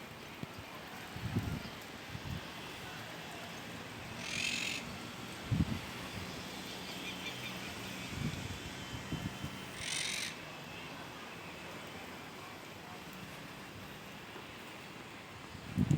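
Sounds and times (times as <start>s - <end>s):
faint outdoor hiss: 0.0s - 15.9s
hoarse hissing bird screech: 9.8s - 10.4s.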